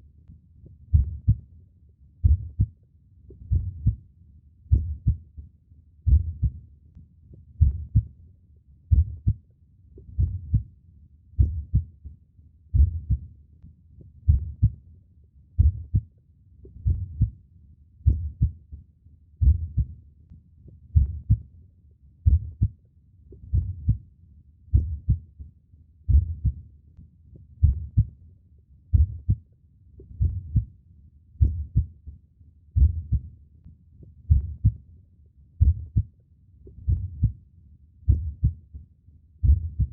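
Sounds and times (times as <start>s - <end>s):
slow heartbeat thumps: 0.9s - 1.4s, 2.2s - 2.7s, 3.4s - 4.0s, 4.7s - 5.3s, 6.1s - 6.6s, 7.6s - 8.1s, 8.9s - 9.4s, 10.0s - 10.7s, 11.4s - 12.0s, 12.7s - 13.3s, 14.2s - 14.8s, 15.6s - 16.1s, 16.7s - 17.4s, 18.0s - 18.6s, 19.4s - 20.0s, 20.9s - 21.4s, 22.2s - 22.7s, 23.4s - 24.0s, 24.7s - 25.2s, 26.1s - 26.6s, 27.6s - 28.1s, 28.9s - 29.4s, 30.1s - 30.7s, 31.4s - 31.9s, 32.8s - 33.3s, 34.2s - 34.8s, 35.6s - 36.1s, 36.7s - 37.4s, 38.1s - 38.6s, 39.4s - 39.9s.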